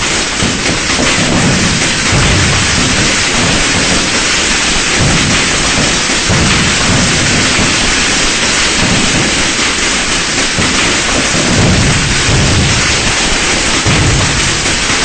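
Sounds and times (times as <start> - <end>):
deep booms: 0.0 - 9.8, 10.6 - 15.0
firecrackers crackling: 0.0 - 15.0.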